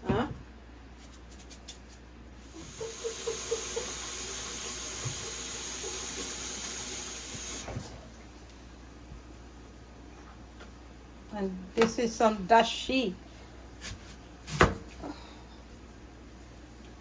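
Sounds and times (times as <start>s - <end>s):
tap running into sink: 2.6s - 7.9s.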